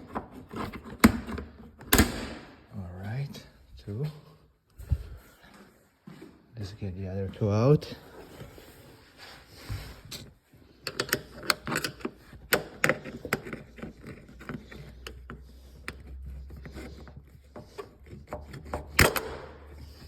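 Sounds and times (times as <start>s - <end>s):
screwdriver prying plastic clips: 18.3s - 19.6s.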